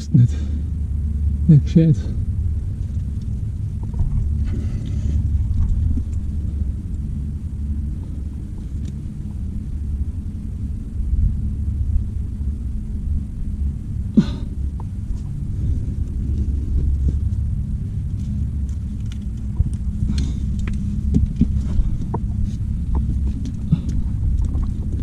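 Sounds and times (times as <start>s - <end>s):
wind buffeting microphone: 0.0s - 25.0s
person grunting: 14.2s - 14.5s.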